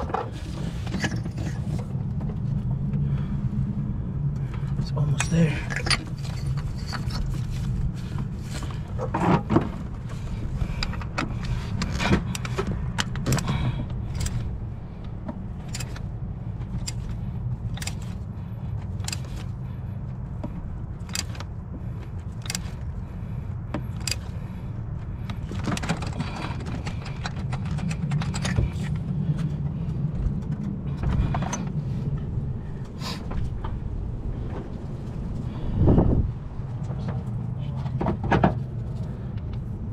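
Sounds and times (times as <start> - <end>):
steady low hum: 0.0 - 39.9
ratchet clicking: 10.8 - 14.4, 15.6 - 16.1, 16.8 - 18.2, 19.0 - 19.4, 21.0 - 21.4, 22.4 - 22.8.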